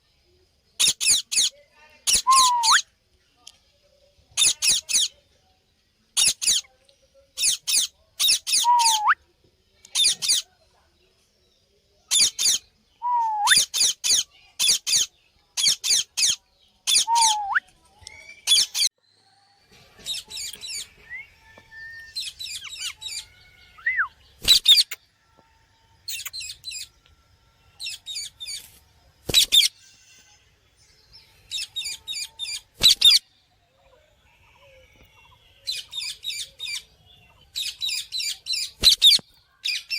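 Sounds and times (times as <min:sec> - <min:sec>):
parrot harsh chirping calls: 0:07.4 - 0:09.2, 0:13.3 - 0:17.6.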